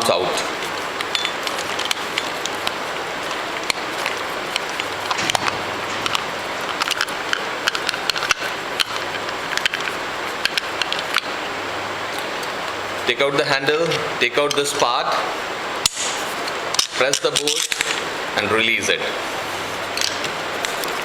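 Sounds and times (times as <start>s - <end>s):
steady hiss: 0.0s - 21.0s
lock mechanism clicks and knocks: 0.7s - 11.4s.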